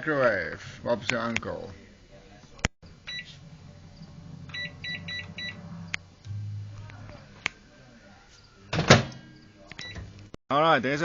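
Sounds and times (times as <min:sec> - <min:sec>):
microwave oven humming: 0:02.8 - 0:07.2
microwave keypad beeps: 0:03.1 - 0:03.3, 0:04.5 - 0:05.6, 0:09.8 - 0:10.1.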